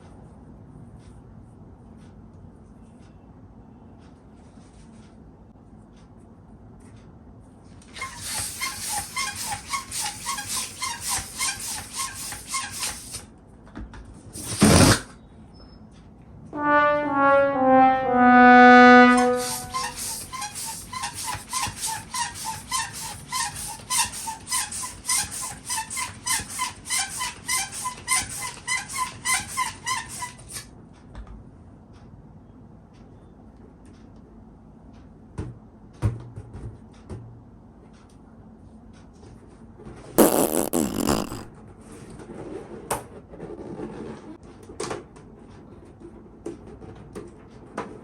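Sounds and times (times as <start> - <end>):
balloon hand pump strokes: 7.9 - 13.3, 14.4 - 15.1, 19.1 - 30.6, 40.2 - 41.5
balloon neck squealing: 8.0 - 13.2, 14.4 - 15.1, 18.3 - 30.5, 40.2 - 41.5.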